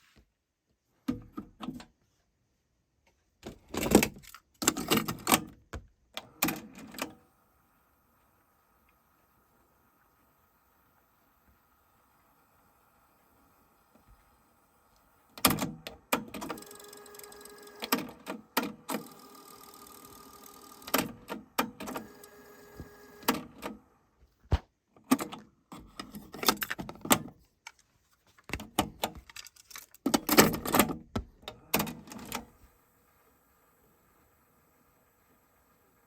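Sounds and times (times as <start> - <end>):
cassette deck motor whirring: 15.4 - 23.9.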